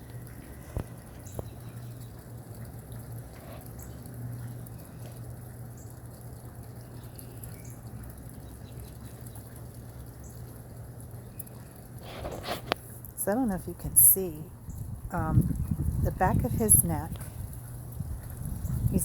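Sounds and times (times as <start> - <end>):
rain dripping and pattering: 0.0 - 19.0.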